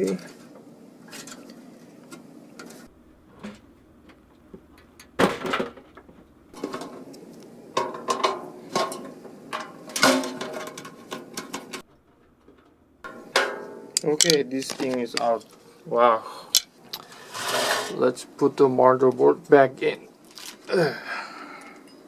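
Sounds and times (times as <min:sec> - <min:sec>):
metal computer case being handled: 0:04.6 - 0:07.1.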